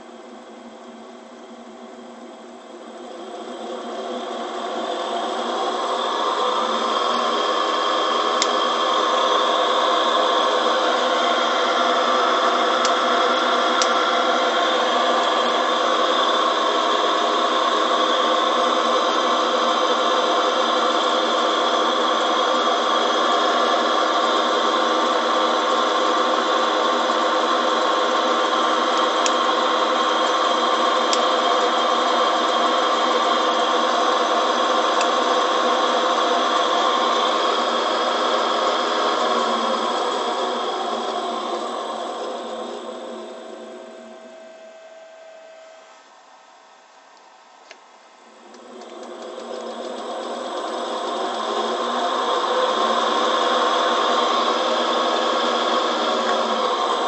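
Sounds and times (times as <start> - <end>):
drill press motor humming: 0.0 - 57.0.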